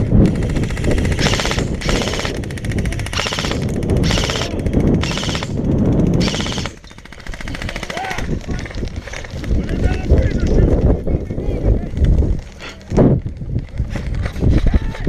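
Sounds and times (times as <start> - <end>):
airsoft guns firing bursts: 0.0 - 10.0.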